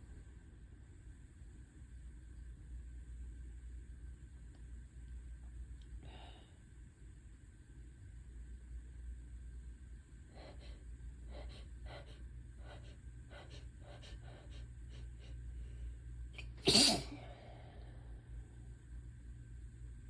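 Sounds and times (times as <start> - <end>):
person's hitching breaths: 10.3 - 16.0
loud sneeze: 16.4 - 17.3.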